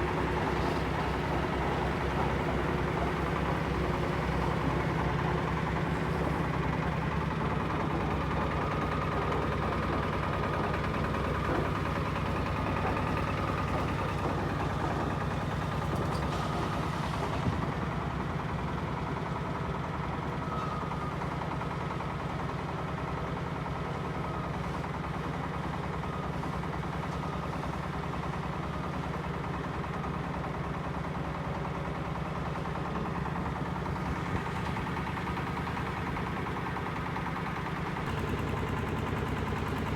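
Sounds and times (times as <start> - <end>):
diesel engine idling: 29.3 - 39.9.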